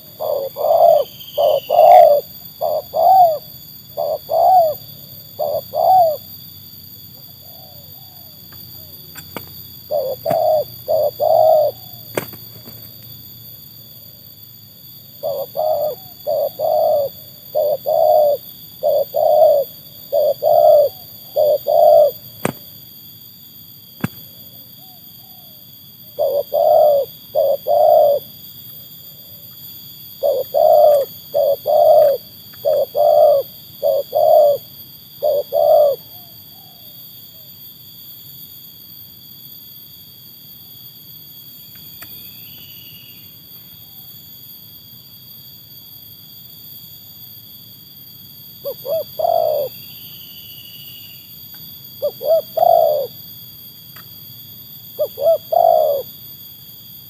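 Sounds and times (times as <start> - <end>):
dove cooing: 0.0 - 6.4, 7.2 - 13.1, 15.1 - 22.8, 24.8 - 28.3, 30.2 - 36.9, 48.6 - 49.8, 52.0 - 53.2, 55.0 - 56.2.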